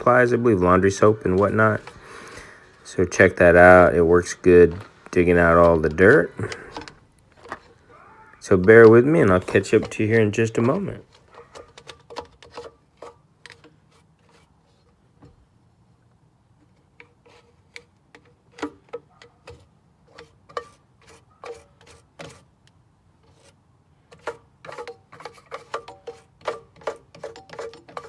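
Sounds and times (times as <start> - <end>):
brush scrubbing inside machine: 0.0 - 2.0.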